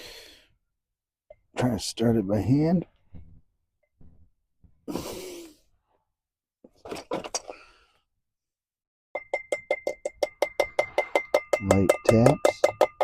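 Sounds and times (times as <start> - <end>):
hammer tapping on metal: 9.2 - 13.0.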